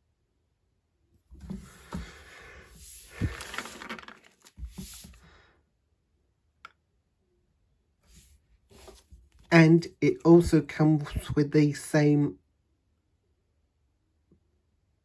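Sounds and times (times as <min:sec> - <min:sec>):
rustling and handling noise: 0:01.3 - 0:05.4, 0:08.0 - 0:09.5.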